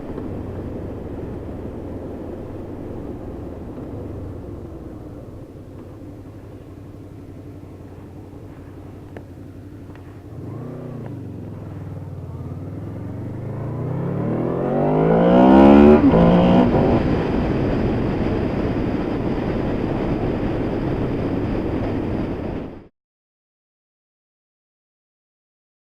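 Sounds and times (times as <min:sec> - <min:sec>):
motorcycle engine revving: 0:00.0 - 0:22.4
loud rushing noise: 0:10.3 - 0:22.8.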